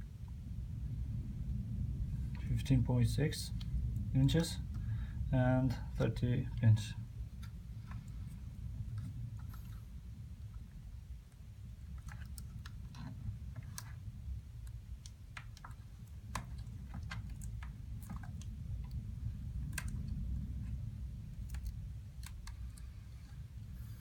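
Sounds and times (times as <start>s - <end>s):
steady low hum: 0.0s - 24.0s
hands clicking plastic parts: 11.9s - 22.9s.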